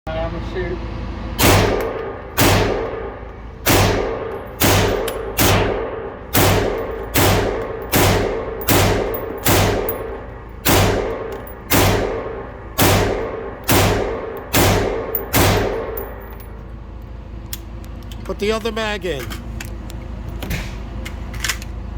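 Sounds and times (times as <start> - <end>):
pistol shots echoing: 1.4 - 16.2.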